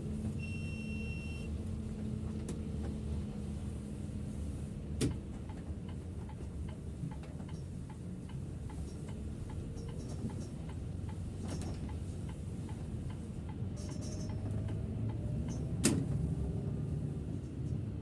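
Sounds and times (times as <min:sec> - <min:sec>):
bus engine rumble: 0:00.0 - 0:18.0.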